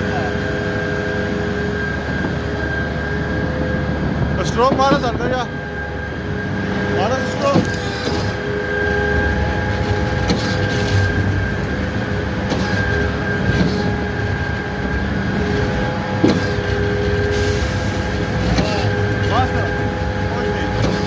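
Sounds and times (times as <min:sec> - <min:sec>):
concrete pump machine drone: 0:00.0 - 0:21.0
constant machine whine: 0:00.0 - 0:21.0
sharp machine knocks: 0:07.4 - 0:08.4.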